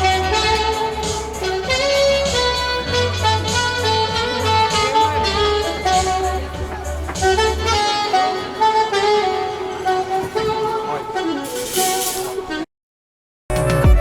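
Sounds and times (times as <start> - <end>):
bass line: 0.0 - 7.9
jazzy saxophone melody: 0.0 - 12.7.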